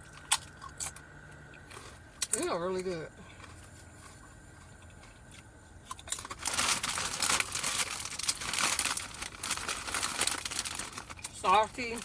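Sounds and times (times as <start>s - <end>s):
chip bag crinkling: 6.0s - 12.0s.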